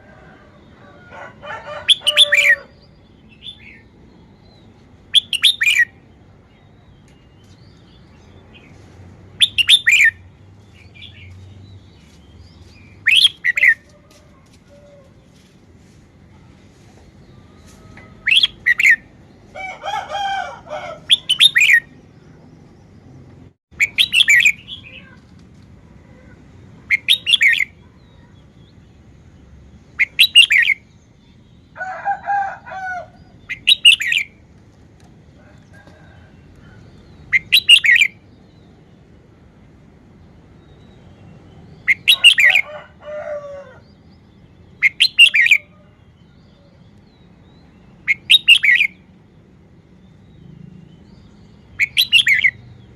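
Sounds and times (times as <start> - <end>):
bird singing bright phrases: 1.6 - 14.2, 16.9 - 25.2, 26.5 - 32.3, 33.0 - 34.4, 35.1 - 39.2, 40.1 - 42.8, 43.8 - 52.9
lower warbling bird calls: 1.7 - 3.9, 9.4 - 10.2, 12.9 - 13.9, 17.3 - 19.1, 20.5 - 22.0, 23.8 - 25.2, 30.0 - 30.9, 33.2 - 34.4, 36.6 - 38.2, 41.7 - 42.7, 44.8 - 46.9, 47.5 - 49.0, 51.0 - 52.7.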